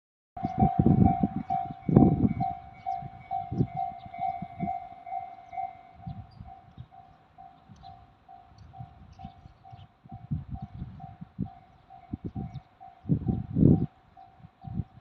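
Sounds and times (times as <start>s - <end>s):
level-crossing alarm ringing: 0.4s - 9.8s, 11.1s - 13.2s.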